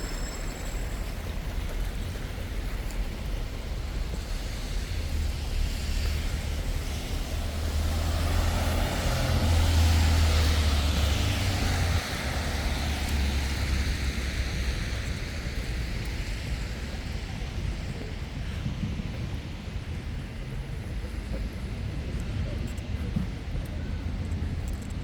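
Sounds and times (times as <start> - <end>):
low traffic rumble: 0.0 - 25.0
vehicle passing: 6.5 - 14.6.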